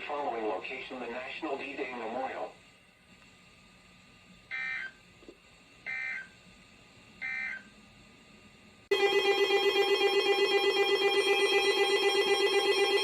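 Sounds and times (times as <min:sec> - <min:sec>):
loud rapidly pulsing alert tone: 0:08.9 - 0:13.0.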